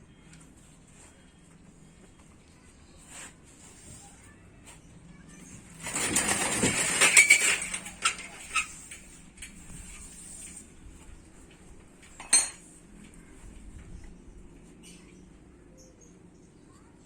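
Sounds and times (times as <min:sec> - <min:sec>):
metal tools clattering: 0:05.8 - 0:10.6, 0:12.2 - 0:12.7.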